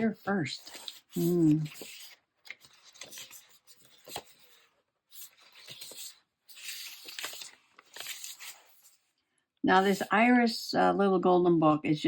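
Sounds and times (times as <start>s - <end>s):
paper rustling and sliding: 0.6s - 9.0s.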